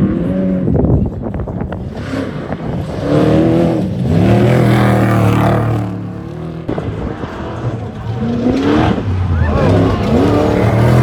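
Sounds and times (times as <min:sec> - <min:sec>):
race vehicle engine revving: 0:00.0 - 0:11.0
another engine rising in pitch: 0:02.9 - 0:11.0.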